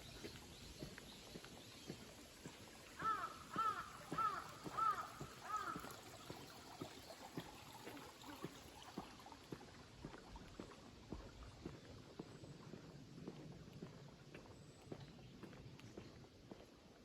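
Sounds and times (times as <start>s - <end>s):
crow cawing: 3.0s - 5.9s.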